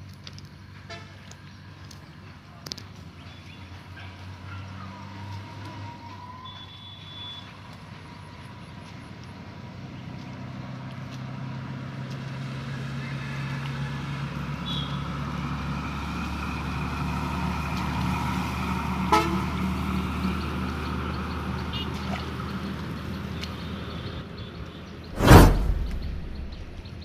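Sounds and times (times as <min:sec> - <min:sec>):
sharp click: 0:25.2 - 0:26.9.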